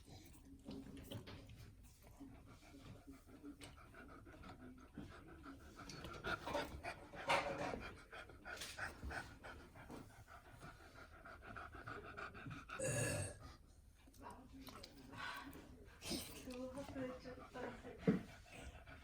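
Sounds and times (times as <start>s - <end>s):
dog panting: 0.0s - 12.8s, 13.4s - 19.0s.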